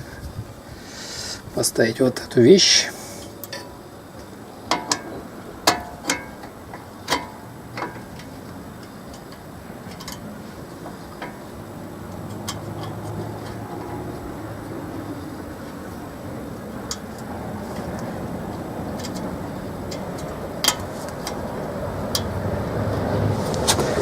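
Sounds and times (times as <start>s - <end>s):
low steady hum: 0.0s - 24.0s
metallic clicks and taps: 3.4s - 11.4s, 12.1s - 14.1s, 18.8s - 23.8s.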